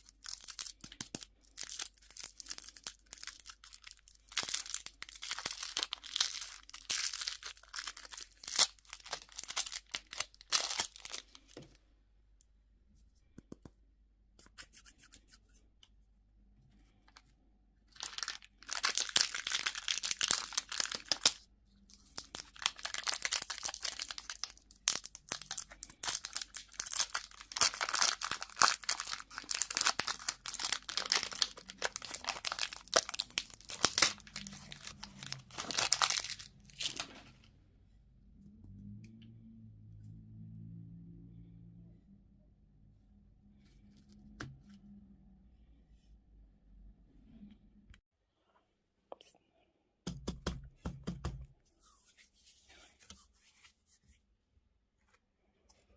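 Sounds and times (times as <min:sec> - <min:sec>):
plastic wrapper crinkling: 0:00.0 - 0:11.6, 0:17.9 - 0:37.3.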